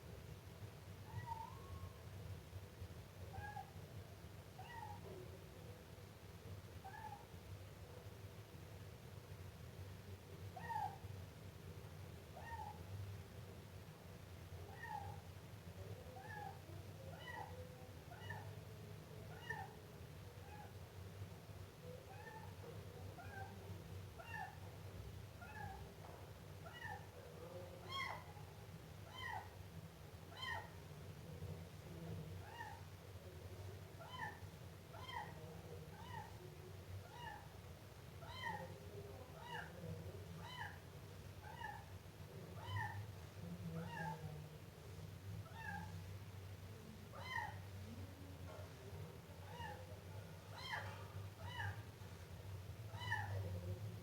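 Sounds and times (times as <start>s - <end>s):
kitten meowing: 53.0s - 53.3s.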